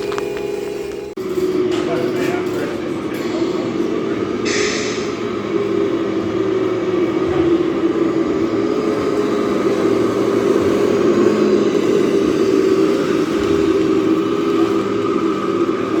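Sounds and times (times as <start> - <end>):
model vehicle motor drone: 5.1 - 16.0.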